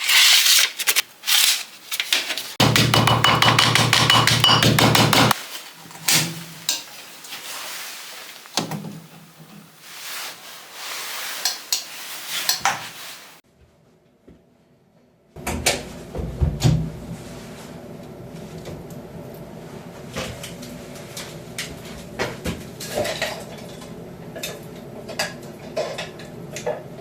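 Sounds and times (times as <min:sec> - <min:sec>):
fast run of tool strikes: 0:02.6 - 0:05.4
knocks taps and clicks: 0:02.6 - 0:05.4.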